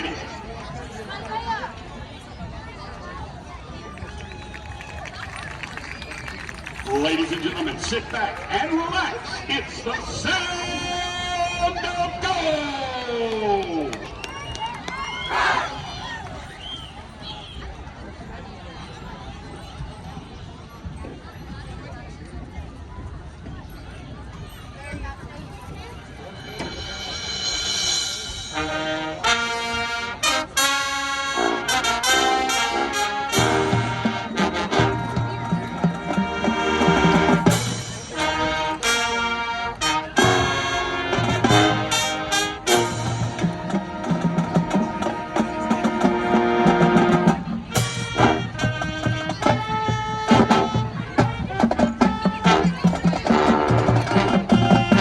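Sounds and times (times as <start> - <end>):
marching band brass chords: 6.2 - 12.7, 26.2 - 55.0.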